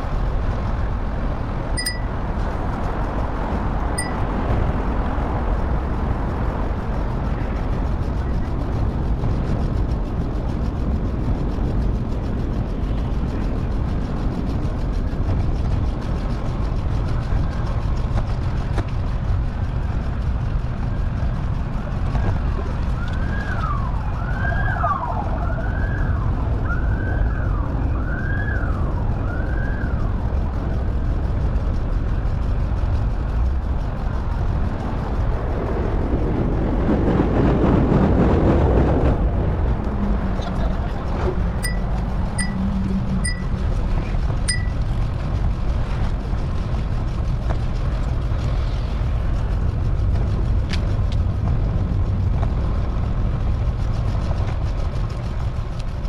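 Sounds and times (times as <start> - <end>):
wind rush on microphone: 0.0 - 56.0
emergency siren wailing: 23.2 - 29.8.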